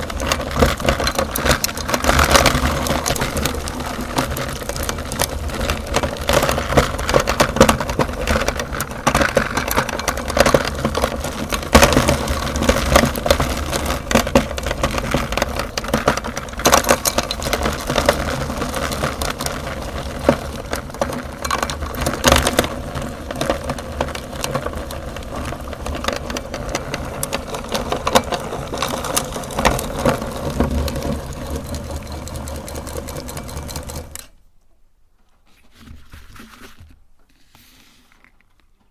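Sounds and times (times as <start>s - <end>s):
cracking and crunching: 0.0s - 34.4s
meat grinder motor running: 17.3s - 34.2s.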